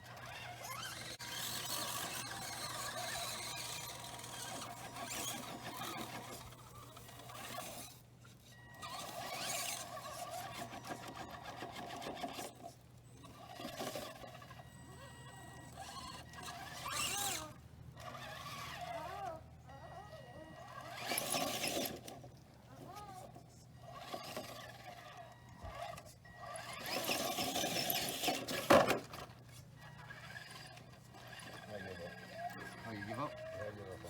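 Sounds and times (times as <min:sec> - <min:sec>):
electric motor whining: 0:00.0 - 0:34.0.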